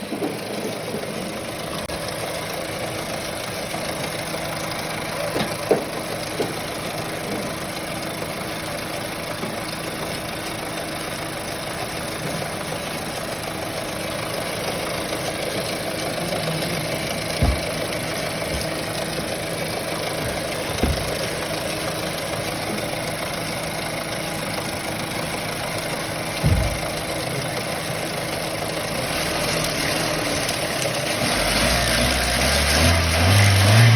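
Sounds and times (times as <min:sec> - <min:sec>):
car engine idling: 0:00.0 - 0:33.9
low thumps: 0:17.3 - 0:19.4, 0:20.1 - 0:21.5, 0:26.4 - 0:27.1.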